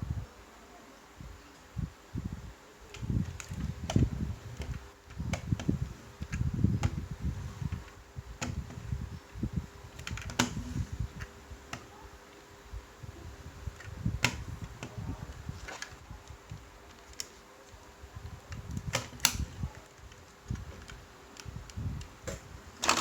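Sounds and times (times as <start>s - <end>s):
toy cars rumbling and knocking: 22.8s - 23.0s.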